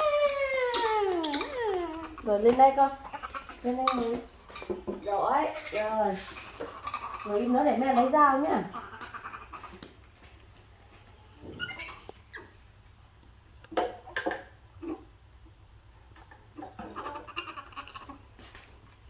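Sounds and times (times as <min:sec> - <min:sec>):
monkey squeaking and chirping: 0:00.0 - 0:02.4, 0:05.6 - 0:06.3, 0:11.6 - 0:12.6.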